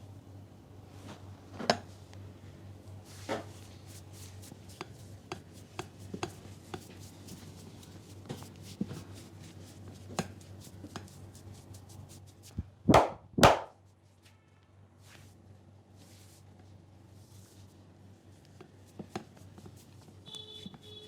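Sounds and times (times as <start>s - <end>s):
hands slapping head: 12.9s - 13.7s
light taps on head: 12.9s - 13.7s.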